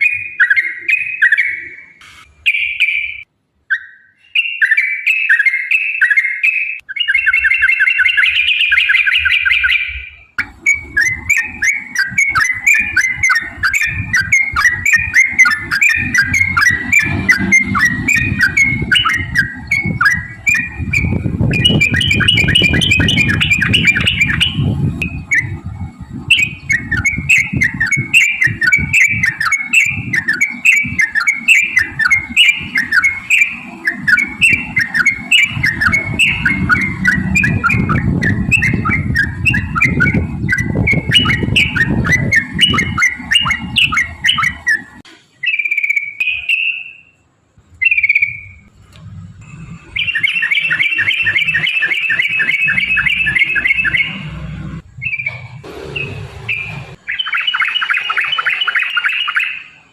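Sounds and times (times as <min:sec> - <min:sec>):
bird chirping rapidly: 0:00.0 - 0:48.7, 0:49.5 - 0:59.9
low background rumble: 0:10.4 - 0:45.1, 0:47.6 - 0:51.7.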